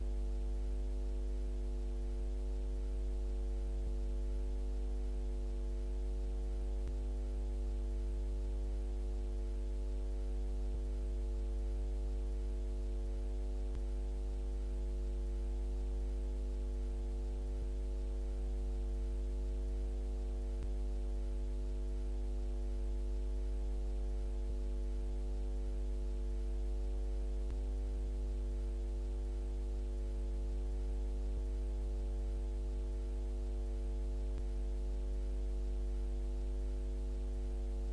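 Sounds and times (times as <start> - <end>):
tape playback hum: 0.0 - 7.7, 12.3 - 37.9
tape hiss: 0.0 - 37.9.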